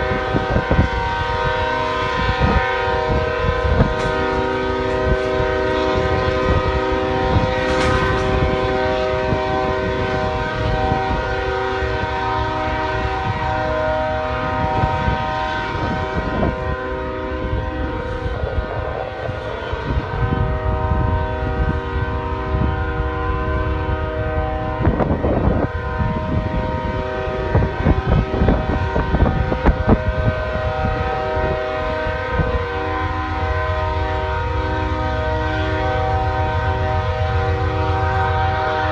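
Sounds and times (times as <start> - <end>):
low rumble: 0.0 - 12.5
train air horn blowing: 0.0 - 38.9.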